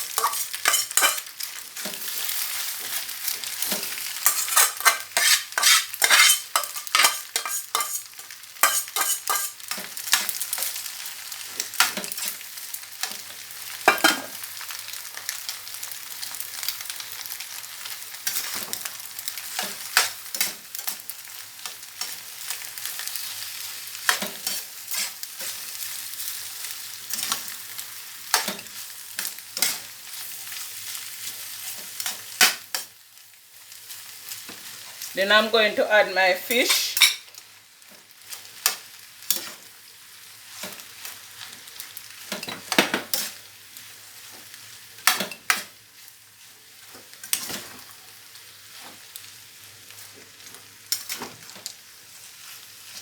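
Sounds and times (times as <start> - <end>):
utensil scraping and knocking pan: 0.0 - 1.2, 4.2 - 9.6
food sizzling in frying pan: 0.0 - 53.0.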